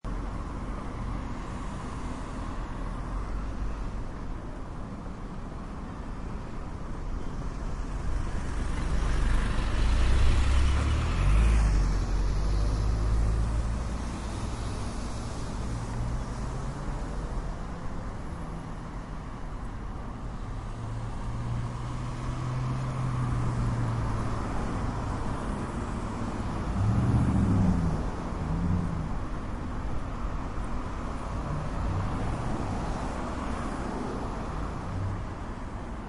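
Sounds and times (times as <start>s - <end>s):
road traffic rumble: 0.0s - 36.0s
vehicle passing close: 24.8s - 29.2s.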